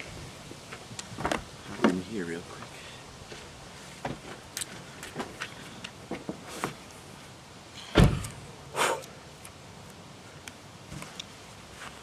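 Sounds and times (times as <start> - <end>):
thump: 8.0 - 8.4.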